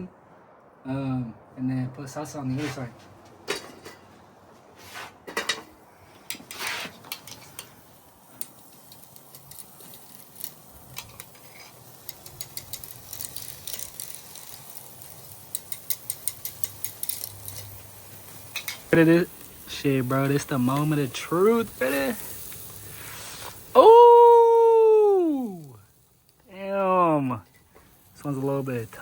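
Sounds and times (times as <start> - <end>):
metal grill basket clinking: 8.4 - 22.7.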